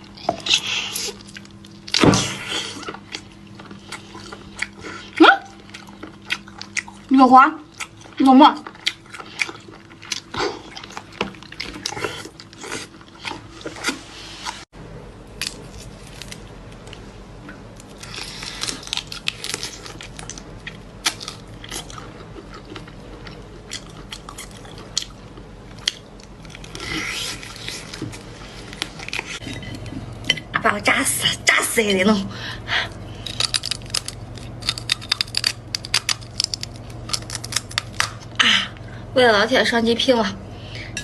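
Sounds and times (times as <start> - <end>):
crunchy chewing and biting: 17.8 - 30.2, 33.0 - 38.4.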